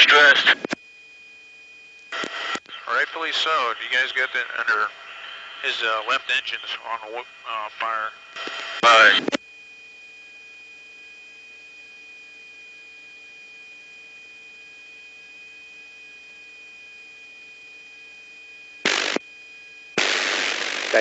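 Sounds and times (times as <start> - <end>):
radio channel hiss and hum: 0.0 - 0.8, 2.1 - 9.4, 18.9 - 19.2, 20.0 - 21.0
constant whining tones: 0.0 - 21.0.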